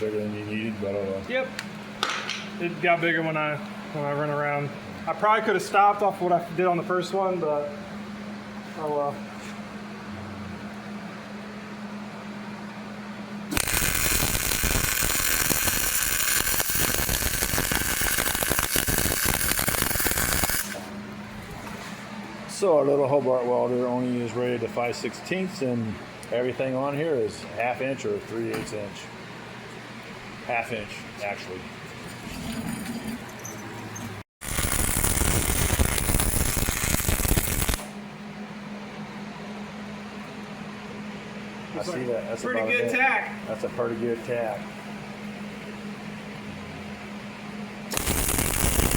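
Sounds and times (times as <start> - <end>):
steady low hum: 0.0 - 33.3, 34.0 - 48.9
welding arc crackling: 13.5 - 20.9, 34.4 - 37.9, 47.9 - 48.9.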